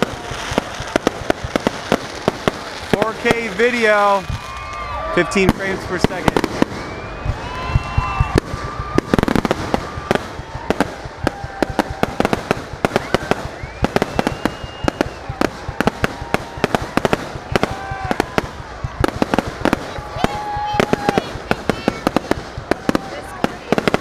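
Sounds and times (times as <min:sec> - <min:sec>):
firework whistling tones: 0:00.0 - 0:24.0
fireworks bangs: 0:00.0 - 0:24.0.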